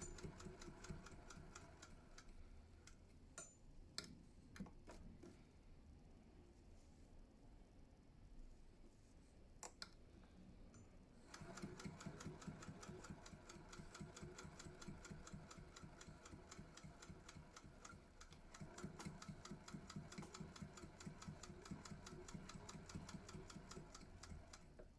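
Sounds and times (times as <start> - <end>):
sewing machine clicking: 0.0 - 2.3, 11.2 - 24.9.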